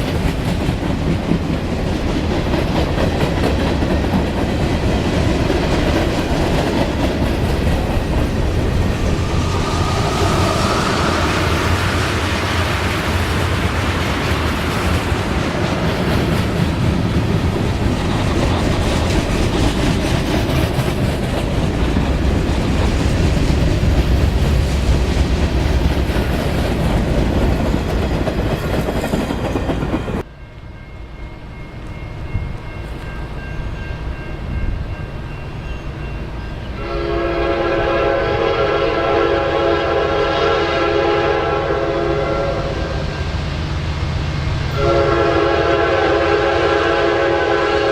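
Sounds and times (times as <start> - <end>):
freight train rumbling past: 0.0 - 47.9
locomotive air horn: 36.8 - 43.1, 44.8 - 47.9.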